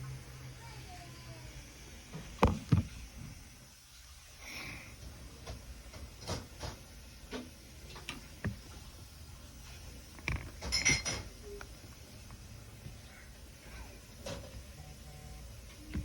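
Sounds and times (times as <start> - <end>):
ringing clinks: 10.7 - 11.2.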